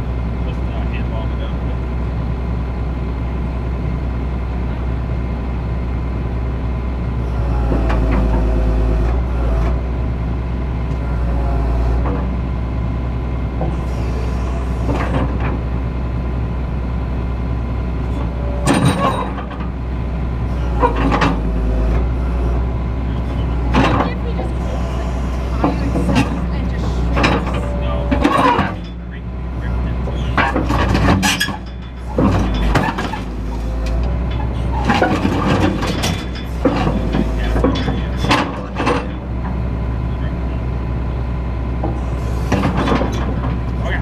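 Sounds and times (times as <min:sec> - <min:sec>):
excavator engine straining: 0:00.0 - 0:44.0
sharp metal clanks: 0:18.6 - 0:19.6.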